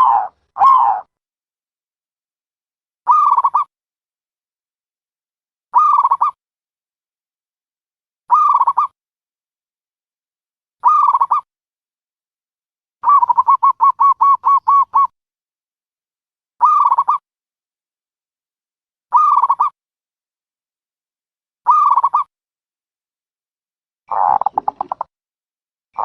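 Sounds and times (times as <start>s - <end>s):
dove cooing: 0.0s - 1.1s, 13.1s - 15.1s, 24.1s - 25.0s.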